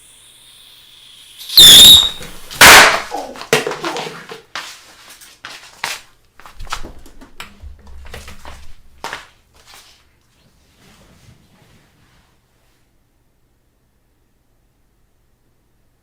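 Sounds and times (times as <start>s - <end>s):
loud cracks: 1.6s - 4.2s.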